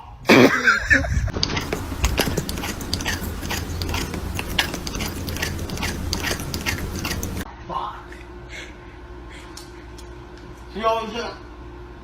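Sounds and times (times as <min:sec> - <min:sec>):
low steady hum: 0:00.8 - 0:10.6
close-up crunching: 0:01.3 - 0:07.5.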